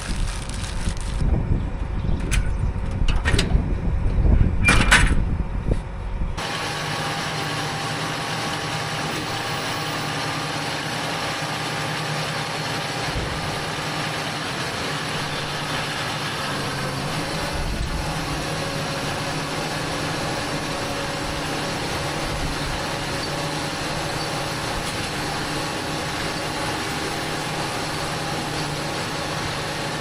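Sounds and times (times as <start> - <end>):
loud rough rumble: 0.0 - 30.0
tractor engine drone: 0.0 - 30.0
sharp clicks and clunks: 2.2 - 3.6.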